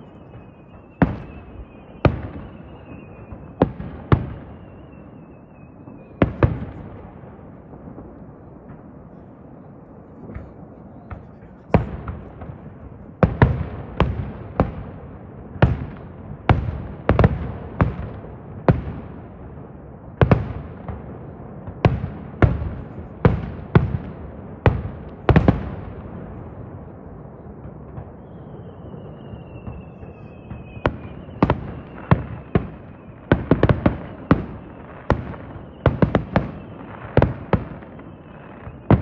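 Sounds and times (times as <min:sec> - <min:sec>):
fireworks bangs: 0:00.0 - 0:39.0
faint firework pops: 0:10.2 - 0:14.8.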